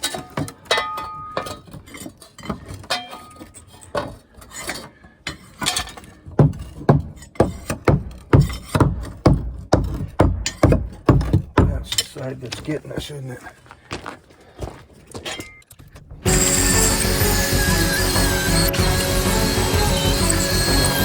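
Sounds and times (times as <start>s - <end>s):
heavy knocks: 6.4s - 12.0s.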